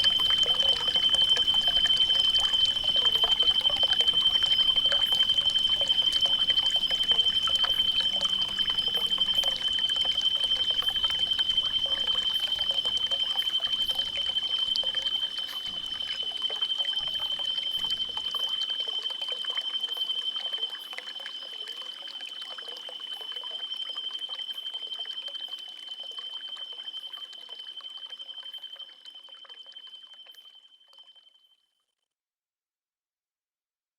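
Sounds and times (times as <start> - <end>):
faint ticks: 0.0 - 18.4
high-pitched insect drone: 0.0 - 20.9
water trickling: 0.0 - 31.2.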